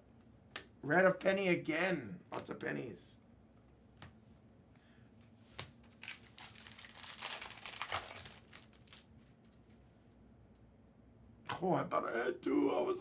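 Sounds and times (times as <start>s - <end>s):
card pack wrapper tearing: 5.8s - 9.6s.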